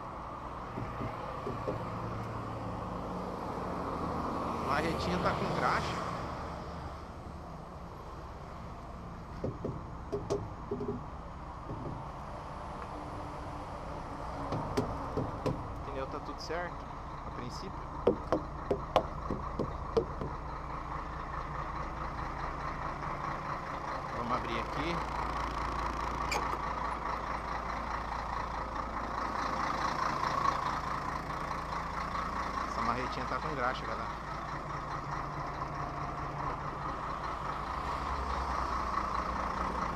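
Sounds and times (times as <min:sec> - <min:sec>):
diesel engine idling: 0:00.0 - 0:39.9
mallet knocking on tyres: 0:00.7 - 0:01.9, 0:09.4 - 0:12.1, 0:14.5 - 0:15.7, 0:18.0 - 0:20.4.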